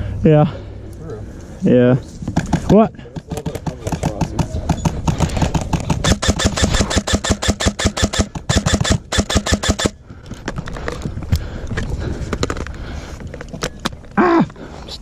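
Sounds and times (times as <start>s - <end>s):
airsoft rifle automatic fire: 6.0s - 10.0s.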